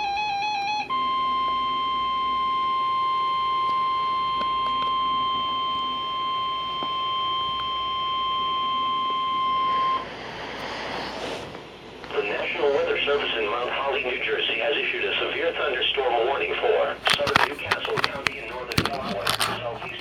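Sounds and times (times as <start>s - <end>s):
radio hiss: 10.0s - 20.0s.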